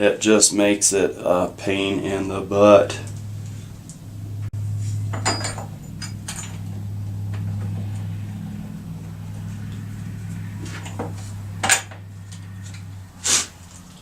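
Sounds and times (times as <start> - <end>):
steady low hum: 0.0 - 14.0
metal tools clinking: 5.1 - 6.7.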